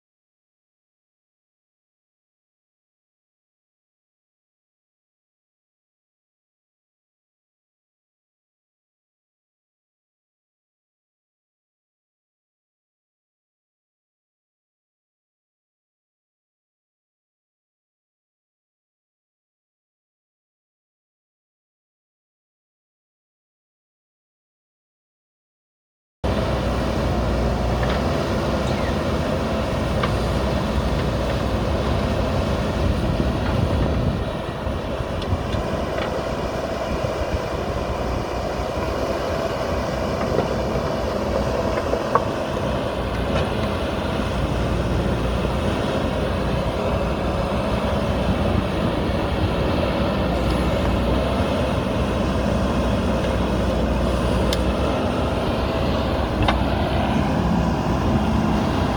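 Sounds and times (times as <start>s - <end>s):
diesel engine running: 26.2s - 58.9s.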